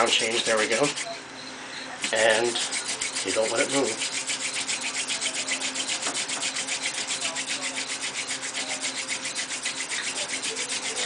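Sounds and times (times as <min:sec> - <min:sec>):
hand drill spindle rasping: 0:00.0 - 0:01.2, 0:02.0 - 0:11.0
faint steady squeak: 0:00.3 - 0:11.0.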